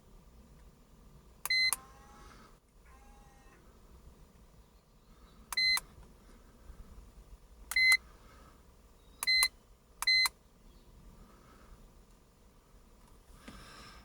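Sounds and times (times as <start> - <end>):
diagnostic scanner key beeps: 1.5 - 1.8, 5.5 - 5.9, 7.7 - 8.0, 9.2 - 10.4.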